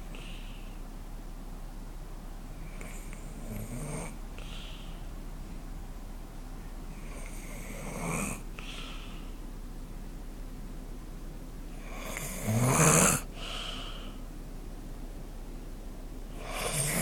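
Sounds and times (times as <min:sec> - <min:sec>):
snoring: 0:02.7 - 0:04.2, 0:07.0 - 0:08.5, 0:11.8 - 0:13.3, 0:16.4 - 0:17.0
breathy out-breath: 0:04.4 - 0:05.1, 0:08.6 - 0:09.4, 0:13.3 - 0:14.2.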